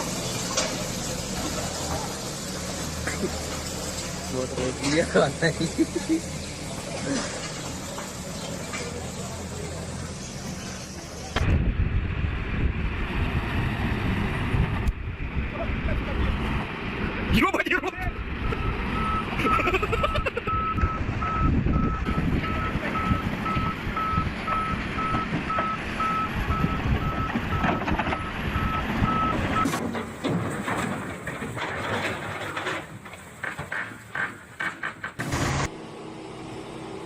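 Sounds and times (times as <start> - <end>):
diesel engine rumble: 0.0 - 37.0
vehicle reversing alarm beeping: 18.4 - 29.8
irregular knocks and clatter: 26.9 - 35.7.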